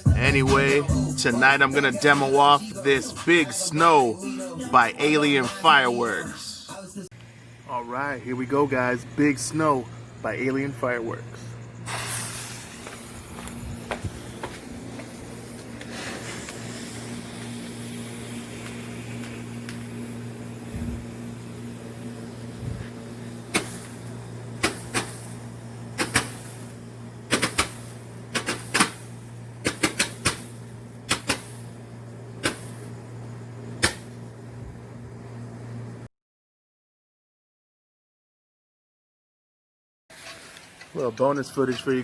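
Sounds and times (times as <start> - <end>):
firework hissing: 7.3 - 34.3
firework sharp bangs: 23.5 - 24.0, 24.6 - 25.4, 26.0 - 26.7, 27.3 - 31.7, 32.4 - 32.9.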